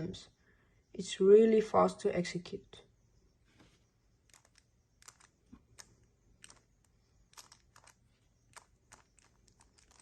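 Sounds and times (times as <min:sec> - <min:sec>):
puzzle cube layers clicking: 0:04.2 - 0:10.0.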